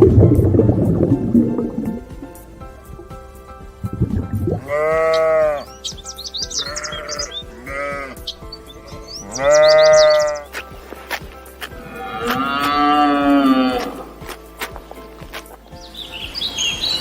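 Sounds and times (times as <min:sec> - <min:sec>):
background music: 0:00.0 - 0:17.0
sheep bleating: 0:04.6 - 0:05.7, 0:06.5 - 0:10.5, 0:11.8 - 0:14.1.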